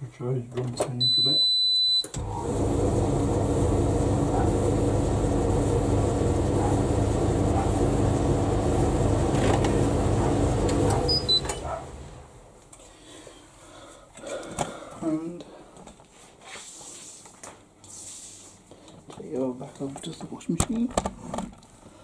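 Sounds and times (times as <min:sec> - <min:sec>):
short beeps: 0:01.0 - 0:02.1
tumble dryer running: 0:02.2 - 0:12.6.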